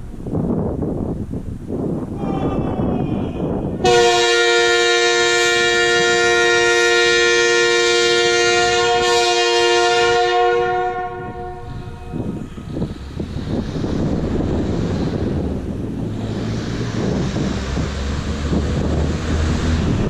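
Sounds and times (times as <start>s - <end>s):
train horn two-note chord: 3.8s - 12.2s.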